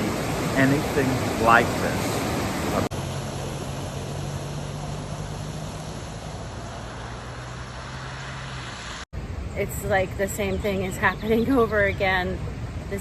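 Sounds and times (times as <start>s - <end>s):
noisy hiss: 0.0s - 7.0s.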